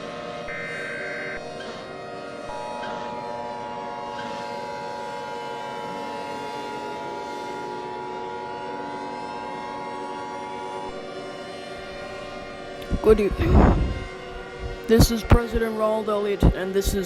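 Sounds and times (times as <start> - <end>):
two-tone alarm: 0.1 - 5.1
lower tones: 11.8 - 15.5.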